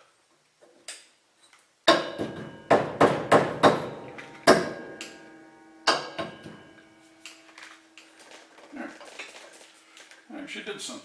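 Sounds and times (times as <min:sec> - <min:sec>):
hammer striking metal: 0:01.9 - 0:08.1.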